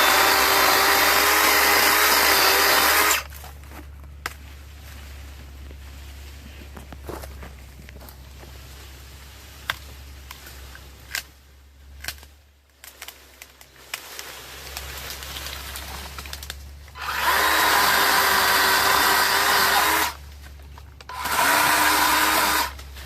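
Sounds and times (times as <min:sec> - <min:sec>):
cordless chainsaw motor whining: 0:00.0 - 0:03.3, 0:17.0 - 0:20.2, 0:21.1 - 0:22.8.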